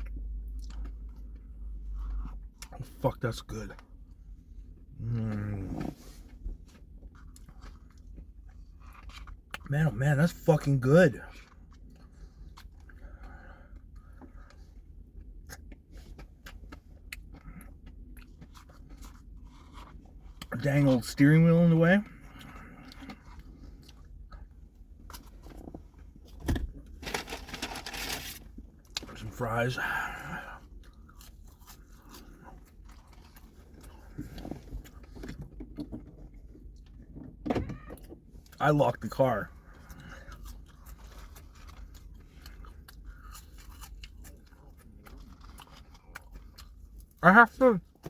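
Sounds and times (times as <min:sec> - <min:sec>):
person chewing food: 0:00.0 - 0:02.8, 0:03.8 - 0:09.7, 0:11.3 - 0:20.5, 0:22.0 - 0:27.0, 0:29.9 - 0:37.2, 0:39.5 - 0:47.2
low steady hum: 0:00.0 - 0:48.0.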